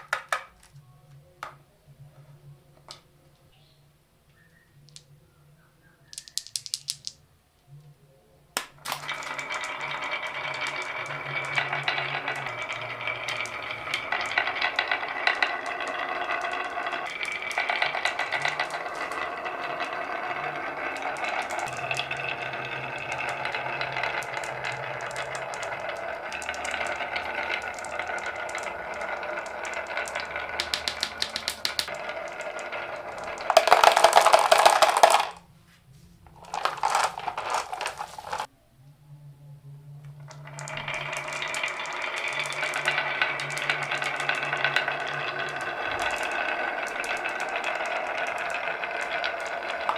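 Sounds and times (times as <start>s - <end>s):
marbles clattering down wooden run: 6.1s - 7.2s, 8.8s - 35.4s, 36.4s - 38.5s, 40.3s - 49.9s.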